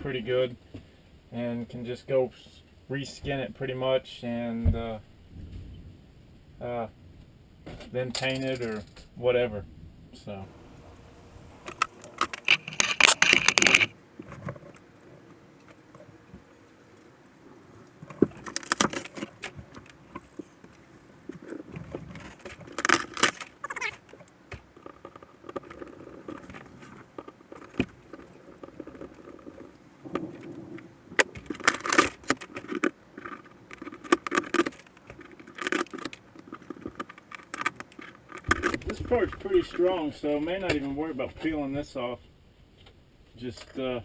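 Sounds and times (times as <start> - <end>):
rustling: 10.4 - 40.0
ceiling board tearing and snapping: 10.5 - 39.5.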